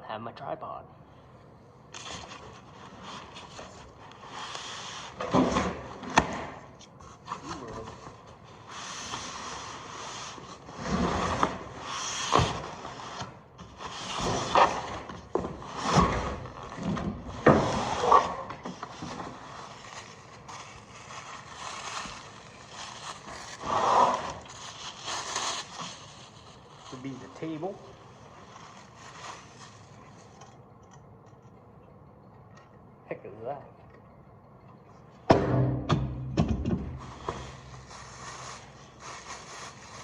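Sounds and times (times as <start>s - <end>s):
cardboard scraping and rustling: 2.0s - 30.5s, 36.8s - 40.0s.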